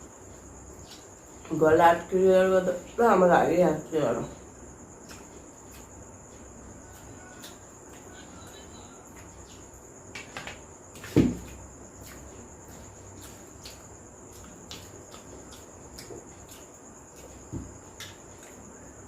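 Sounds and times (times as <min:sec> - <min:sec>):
cricket trill: 0:00.0 - 0:19.0.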